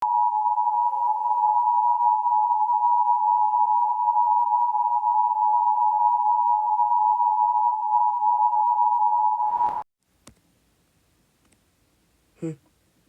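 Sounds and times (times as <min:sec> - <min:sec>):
two-tone alarm signal: 0:00.0 - 0:09.8.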